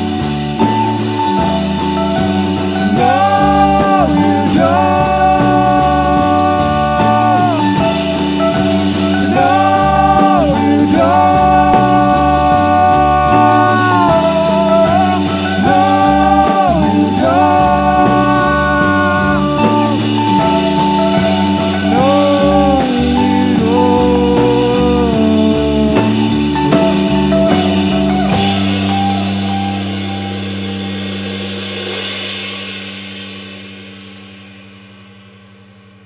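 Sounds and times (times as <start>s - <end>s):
stepping bass line: 0.0s - 31.6s
rock band playing: 0.0s - 35.8s
drums: 0.0s - 36.0s.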